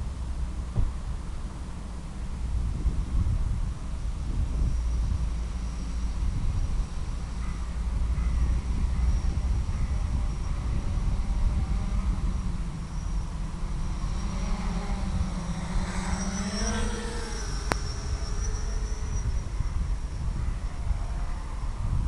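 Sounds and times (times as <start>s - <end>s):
wind rush: 2.3s - 22.0s
electric motor whining: 9.0s - 20.4s.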